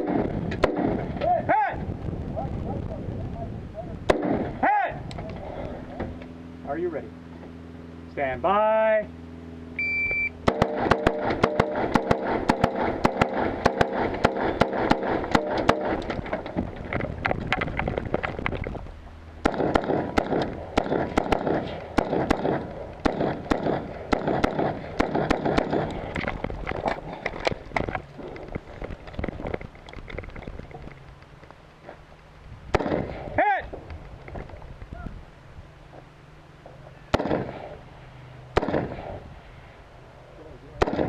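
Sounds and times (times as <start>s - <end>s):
rifle shots: 0.0s - 1.2s, 4.1s - 4.6s, 10.4s - 16.2s, 19.4s - 26.1s, 32.7s - 33.3s, 37.1s - 37.8s, 38.5s - 39.2s, 40.8s - 41.0s.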